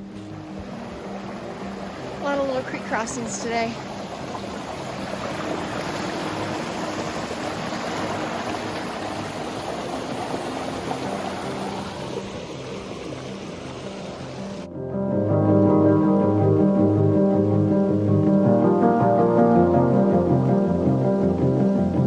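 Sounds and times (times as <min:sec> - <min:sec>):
creek rushing: 0:00.0 - 0:14.7
faint background music: 0:00.0 - 0:22.0.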